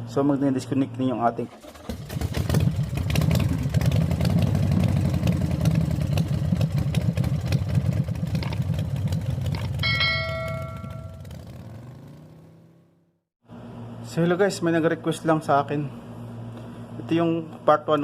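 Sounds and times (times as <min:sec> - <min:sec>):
engine running: 0:01.5 - 0:12.9
bright chime ringing: 0:09.8 - 0:11.3.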